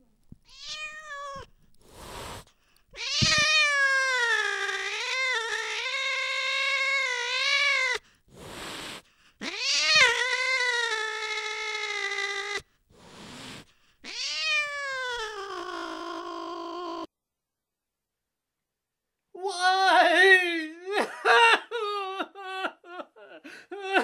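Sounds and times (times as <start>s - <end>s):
cat yowling: 0.5s - 1.5s, 3.0s - 8.0s, 9.4s - 12.6s, 14.0s - 17.1s
cat hissing: 0.5s - 17.1s.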